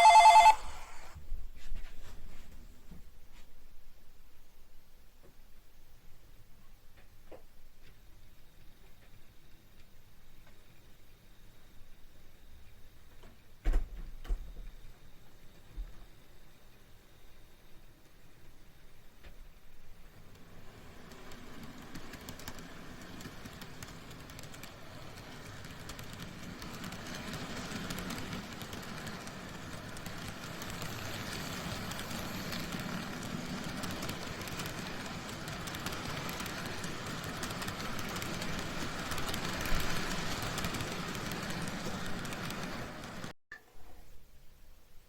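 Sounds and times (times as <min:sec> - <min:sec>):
model train running on track: 0:00.0 - 0:01.1, 0:07.8 - 0:13.6, 0:14.7 - 0:43.3.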